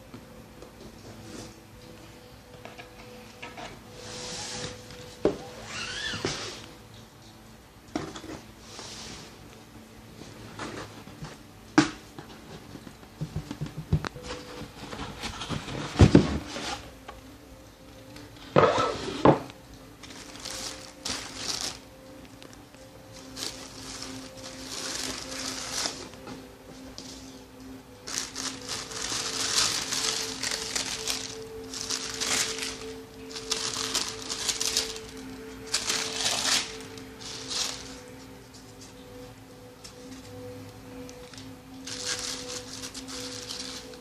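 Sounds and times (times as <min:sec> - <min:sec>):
packaging rustling: 0:19.9 - 0:39.0, 0:41.2 - 0:44.0.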